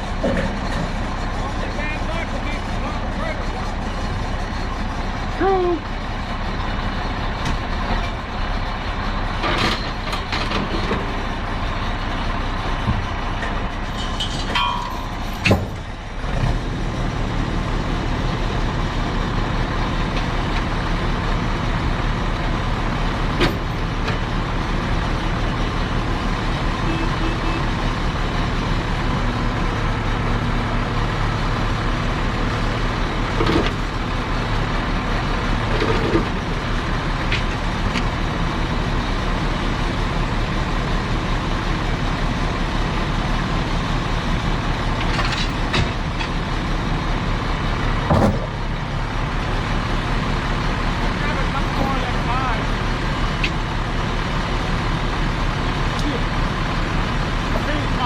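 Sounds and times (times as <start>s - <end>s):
heavy equipment engine running: 0.0s - 58.0s
sharp metallic clunks: 14.0s - 15.9s, 45.0s - 46.8s, 47.8s - 48.8s.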